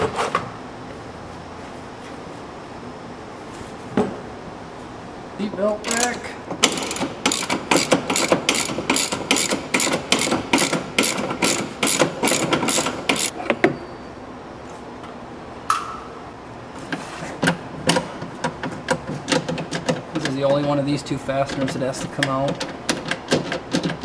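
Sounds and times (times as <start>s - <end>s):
hand ratchet clicking: 5.8s - 13.3s.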